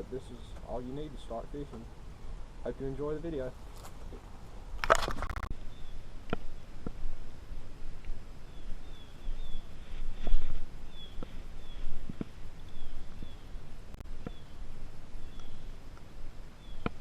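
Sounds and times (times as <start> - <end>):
small bird chirping: 8.5 - 12.0, 14.2 - 14.6, 15.2 - 15.8, 16.6 - 16.9.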